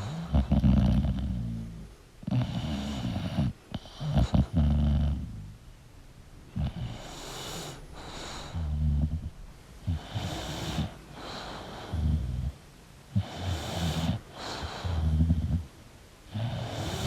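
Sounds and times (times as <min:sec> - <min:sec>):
dog hissing breaths: 0:00.0 - 0:01.7, 0:06.6 - 0:12.6, 0:13.2 - 0:15.7, 0:16.3 - 0:17.0
dog snoring: 0:00.0 - 0:05.6, 0:06.6 - 0:15.7, 0:16.3 - 0:17.0.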